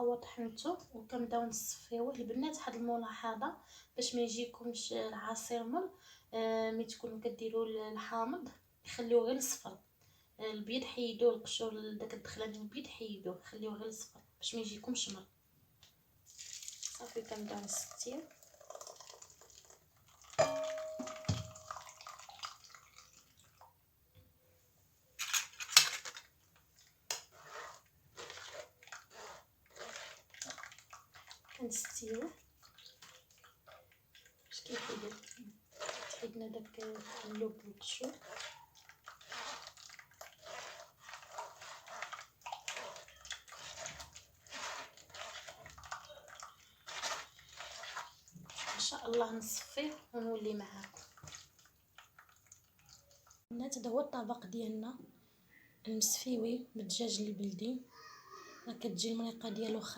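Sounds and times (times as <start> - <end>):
utensil knock: 20.4 - 21.8
ringing metal clink: 20.4 - 21.9
scraping rustling strokes in a sieve: 27.2 - 33.4, 34.5 - 51.4.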